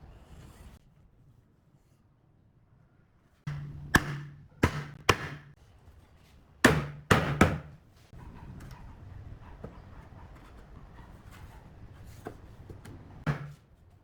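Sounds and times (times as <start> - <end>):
sharp knocks on wood: 3.5 - 5.5, 6.6 - 7.7, 13.3 - 13.6.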